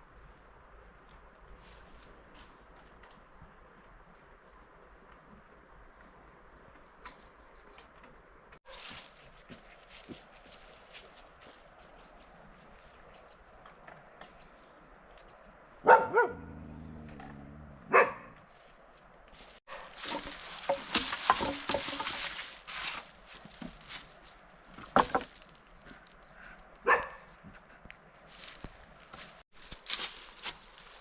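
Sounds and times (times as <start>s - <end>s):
dog barking: 15.8s - 16.6s, 17.8s - 18.4s, 19.7s - 20.0s, 26.8s - 27.3s
scuffling noise: 18.5s - 26.0s, 27.0s - 31.0s.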